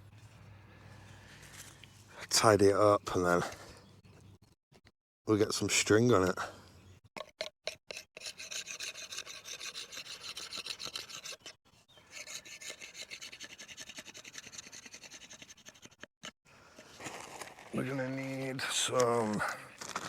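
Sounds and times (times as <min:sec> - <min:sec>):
knife scraping wood: 0:07.2 - 0:17.6.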